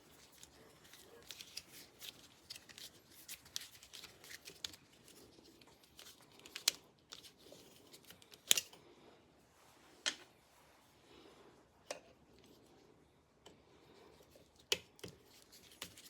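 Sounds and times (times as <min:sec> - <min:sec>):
hands handling small parts: 0:00.0 - 0:08.8.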